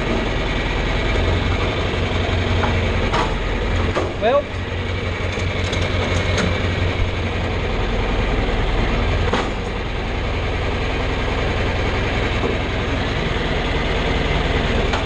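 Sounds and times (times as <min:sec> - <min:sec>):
tractor engine running: 0:00.0 - 0:15.0
wagon rattling and clanking: 0:02.5 - 0:07.3.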